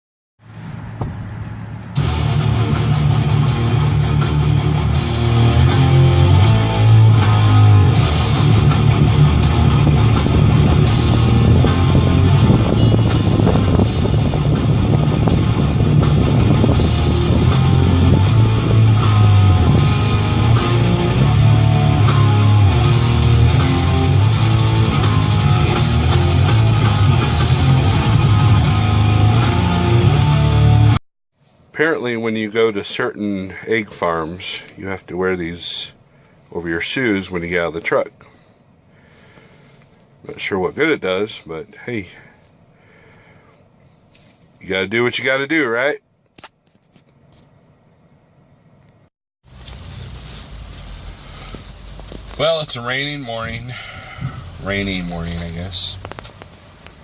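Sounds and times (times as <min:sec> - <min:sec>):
drums: 0:00.9 - 0:31.0, 0:49.4 - 0:57.0
guitar lead-in: 0:02.0 - 0:31.0
heavy rock music: 0:02.0 - 0:31.0, 0:49.5 - 0:56.3.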